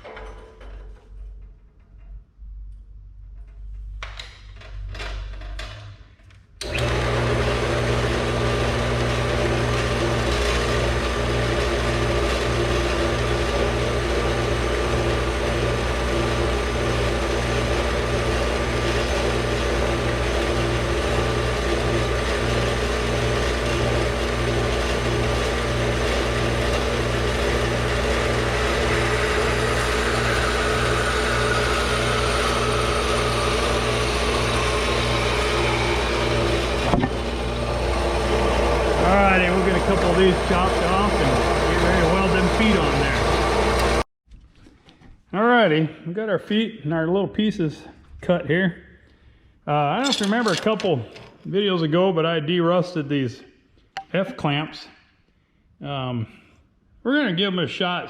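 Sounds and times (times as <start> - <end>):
power saw cutting steel: 6.6 - 44.0, 50.0 - 51.0.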